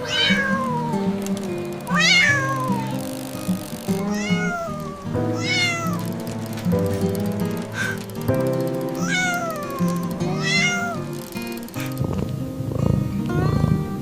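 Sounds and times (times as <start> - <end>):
cat meowing: 0.0 - 1.3, 1.9 - 3.1, 3.9 - 6.2, 7.8 - 8.0, 9.0 - 11.2
gentle background music: 0.0 - 14.0.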